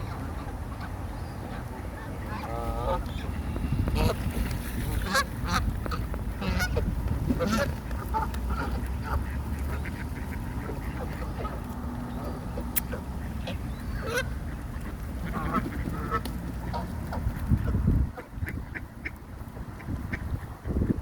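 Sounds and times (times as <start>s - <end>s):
geese honking: 0.0s - 19.2s
steady low rumble: 0.0s - 21.0s.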